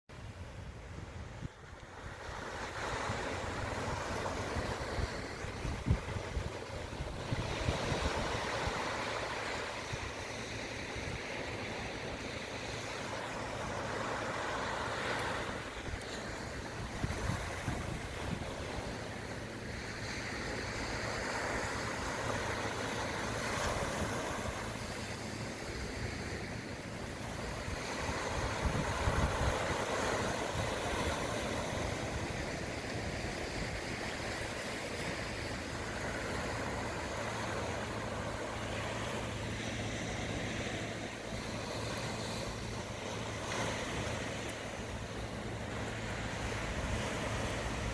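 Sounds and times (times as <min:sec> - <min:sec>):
sea waves breaking on shore: 0:00.1 - 0:47.9
wind rumbling on microphone: 0:00.1 - 0:47.9
steady low hum: 0:00.2 - 0:47.9.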